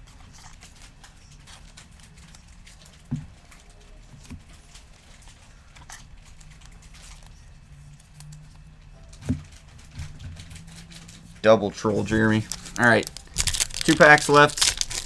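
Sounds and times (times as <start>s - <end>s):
trading cards ticking and sliding: 11.8s - 15.0s.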